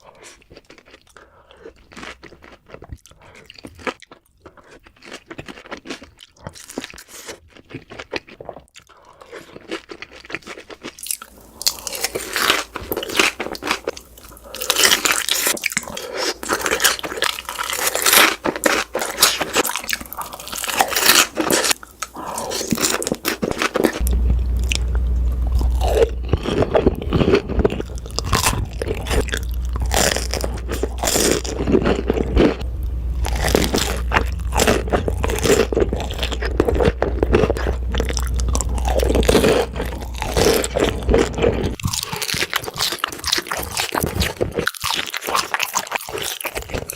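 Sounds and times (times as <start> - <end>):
people chewing crunchy food: 0.0 - 46.9
low hum: 24.0 - 41.8.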